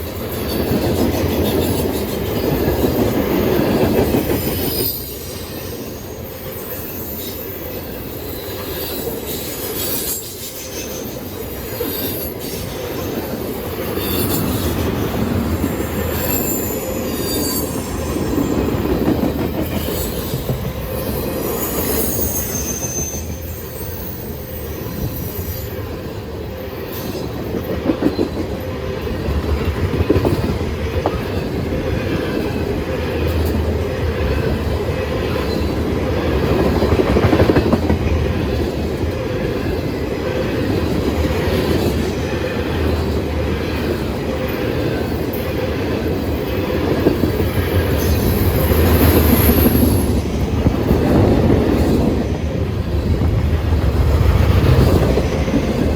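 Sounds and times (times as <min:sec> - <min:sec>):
freight train rumbling on rails: 0:00.0 - 0:55.9
high-pitched wheel squeals: 0:15.7 - 0:18.9, 0:19.6 - 0:25.9, 0:47.2 - 0:50.5.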